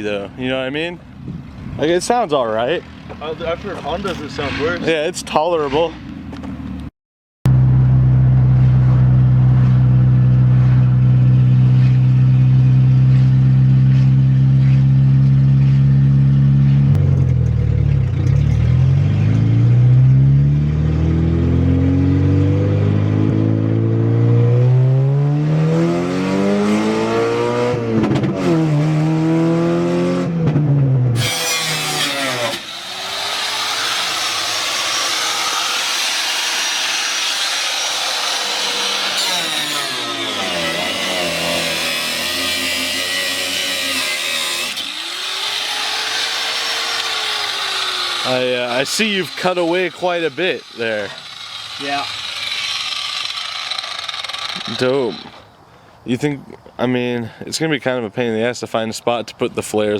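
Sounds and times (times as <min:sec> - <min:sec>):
car engine revving: 0:07.5 - 0:55.4
power tool whirring: 0:31.2 - 0:55.5.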